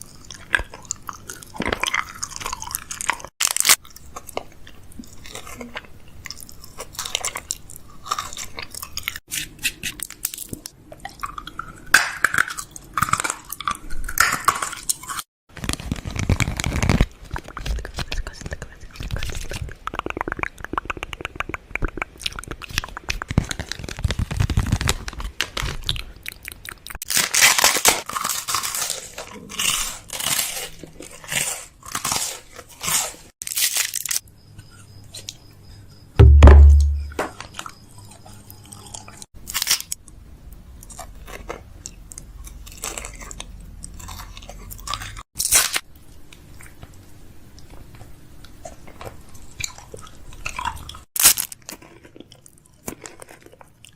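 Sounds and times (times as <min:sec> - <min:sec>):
crunching and crackling: 0:00.0 - 0:09.2, 0:09.8 - 0:34.2, 0:40.8 - 0:47.0, 0:47.6 - 0:53.9
loud low thud: 0:36.2 - 0:37.3.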